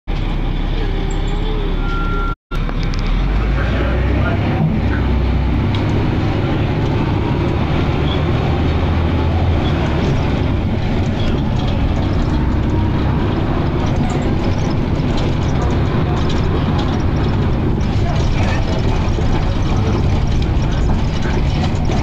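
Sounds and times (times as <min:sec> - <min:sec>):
bus engine rumble: 0:00.1 - 0:22.0
light rattles: 0:09.0 - 0:22.0.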